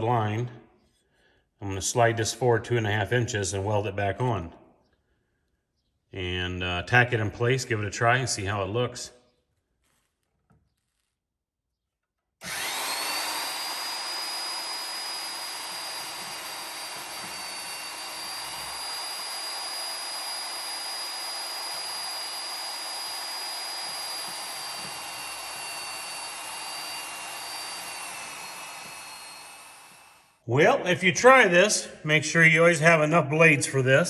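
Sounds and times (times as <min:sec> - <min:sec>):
band saw cutting steel: 0:12.4 - 0:30.4.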